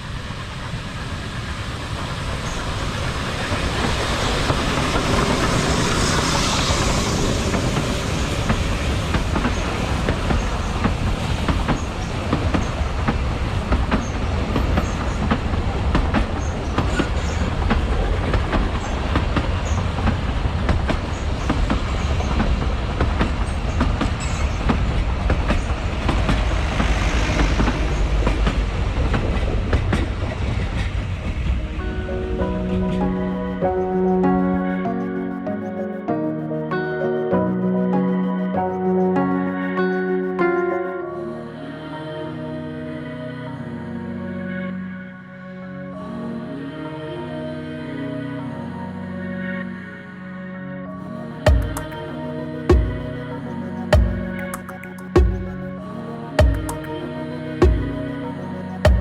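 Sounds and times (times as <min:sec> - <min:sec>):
train rumbling past: 0:00.0 - 0:36.0.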